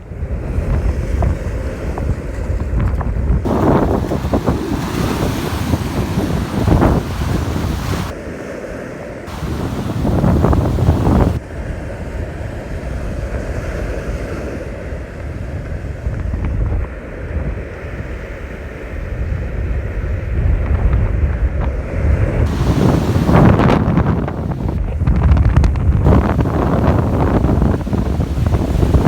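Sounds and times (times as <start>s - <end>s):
wind buffeting microphone: 0.0s - 8.2s, 9.3s - 29.0s
ocean surf: 3.4s - 20.6s, 21.2s - 24.9s, 26.0s - 29.0s.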